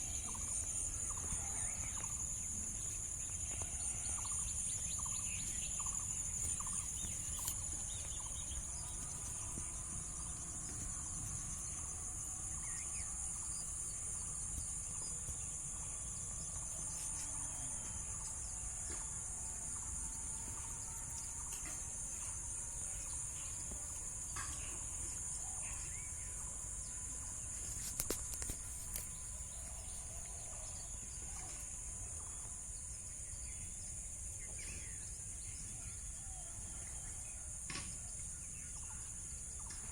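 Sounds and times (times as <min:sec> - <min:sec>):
insects chirping: 0:00.0 - 0:39.9.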